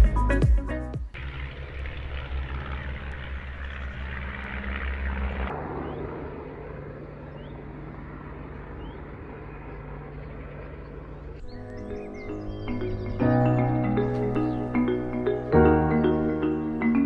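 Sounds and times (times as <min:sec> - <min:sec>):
light aircraft engine droning: 0:01.2 - 0:17.0
faint bird chirps: 0:08.7 - 0:15.0.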